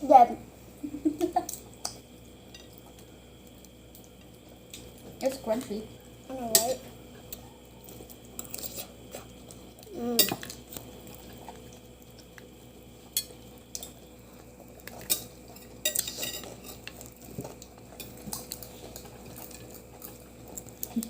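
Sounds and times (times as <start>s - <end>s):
cutlery and dishes clinking: 14.9s - 17.1s.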